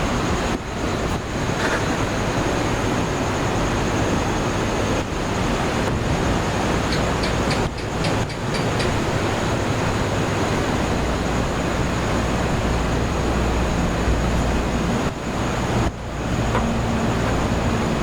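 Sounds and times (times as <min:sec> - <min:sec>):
sea waves washing on shore: 0:00.0 - 0:18.0
gecko chirps: 0:06.9 - 0:09.0.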